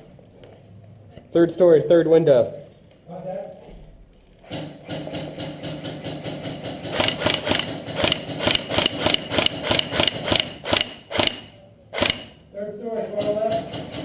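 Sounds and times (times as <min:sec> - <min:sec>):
airsoft gun shots: 0:04.5 - 0:12.4.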